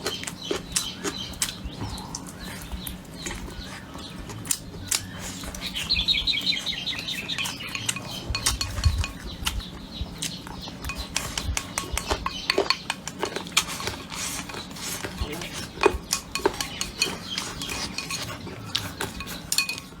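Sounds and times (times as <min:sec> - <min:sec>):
chopsticks clinking on bowls: 0:07.0 - 0:20.0.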